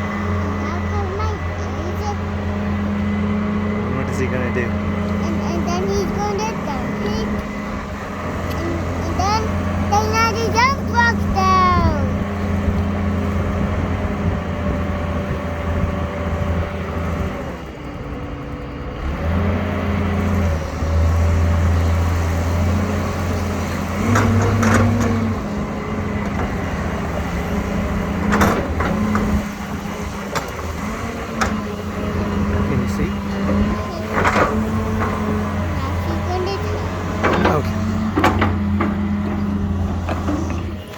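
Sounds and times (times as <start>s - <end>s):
diesel engine running: 0.0s - 40.9s
sharp knocks: 37.1s - 40.6s.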